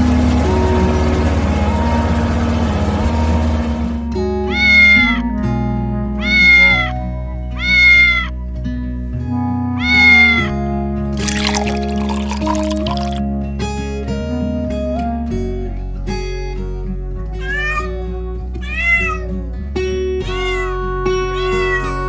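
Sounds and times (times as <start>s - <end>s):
background music: 0.0s - 22.0s
cat meowing: 4.5s - 5.2s, 6.2s - 6.9s, 7.6s - 8.3s, 9.8s - 10.5s, 17.4s - 18.0s, 18.6s - 19.4s, 20.2s - 22.0s.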